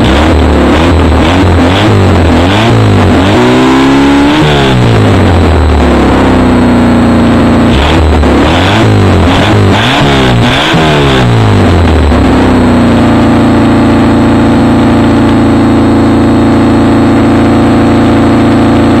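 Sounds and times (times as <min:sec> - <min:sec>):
car engine revving and idling: 0:00.0 - 0:19.0.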